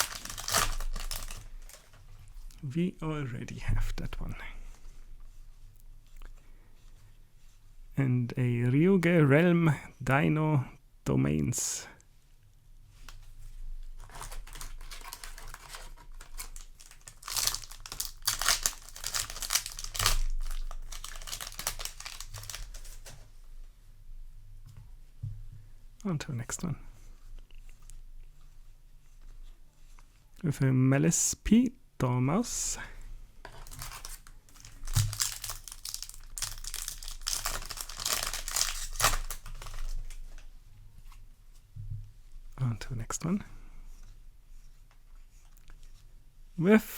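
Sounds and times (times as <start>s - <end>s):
foil wrapper crinkling and tearing: 0.0s - 2.0s, 14.0s - 23.2s, 33.5s - 40.3s.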